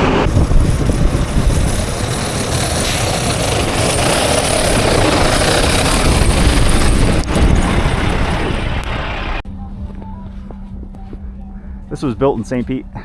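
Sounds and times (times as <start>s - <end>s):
blizzard wind roaring: 0.0s - 9.4s
steady low hum: 0.0s - 13.0s.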